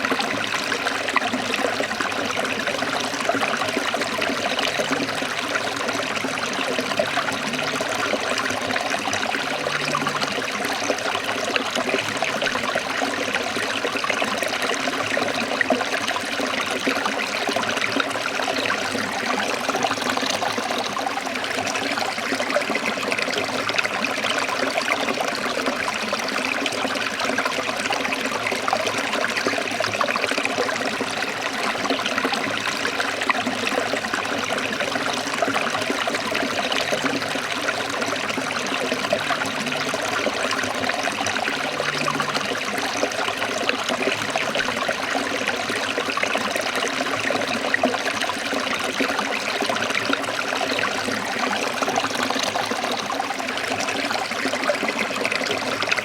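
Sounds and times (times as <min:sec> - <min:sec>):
stream rushing over rocks: 0:00.0 - 0:56.0.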